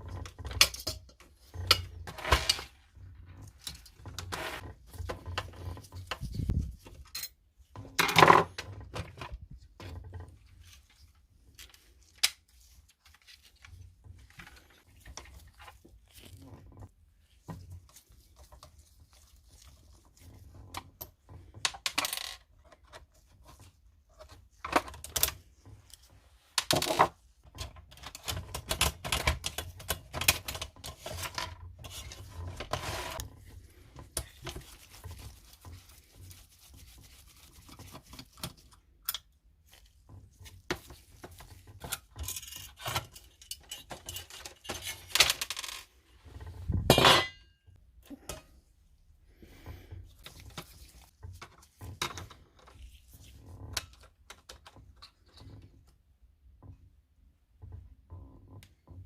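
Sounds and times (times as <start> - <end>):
scraping and rubbing: 1.3 - 7.1, 30.4 - 39.0.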